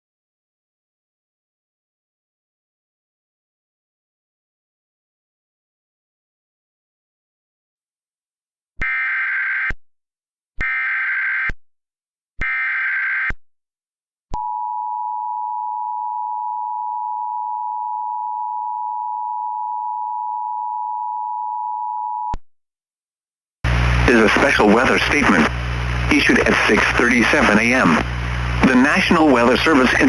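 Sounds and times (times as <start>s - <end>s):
data header bursts: 23.7s - 30.0s
steady attention tone: 23.7s - 30.0s.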